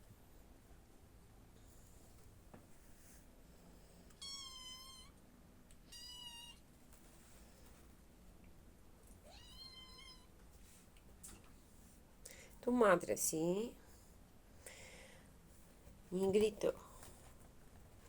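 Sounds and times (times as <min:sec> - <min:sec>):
cat meowing: 0:04.2 - 0:05.2, 0:05.8 - 0:06.6, 0:09.2 - 0:10.3.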